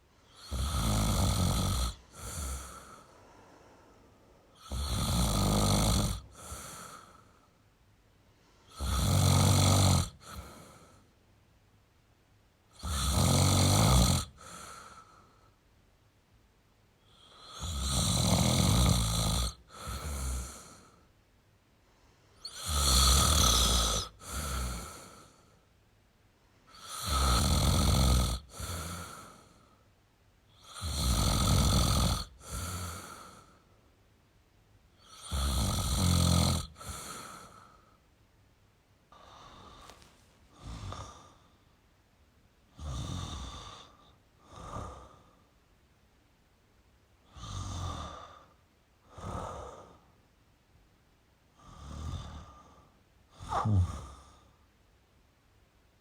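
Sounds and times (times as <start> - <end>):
man snoring: 0.3 - 3.1, 4.5 - 7.4, 8.7 - 11.0, 12.7 - 15.1, 17.1 - 21.0, 22.4 - 25.4, 26.7 - 29.6, 30.6 - 33.6, 35.0 - 37.7, 40.5 - 41.4, 42.7 - 45.2, 47.2 - 50.0, 51.6 - 54.5
soft breath: 1.9 - 4.6, 6.2 - 8.8, 39.1 - 41.8, 52.4 - 54.6.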